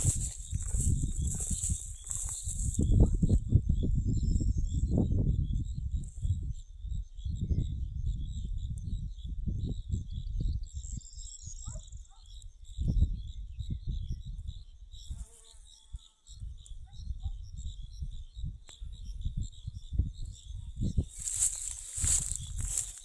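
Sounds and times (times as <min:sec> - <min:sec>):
low rumbling wind gusts: 0:00.0 - 0:05.9
insects chirping: 0:00.0 - 0:23.0.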